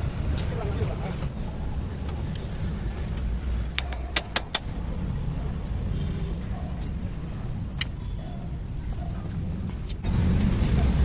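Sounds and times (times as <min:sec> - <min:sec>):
metallic tool clinks: 0:03.6 - 0:04.9.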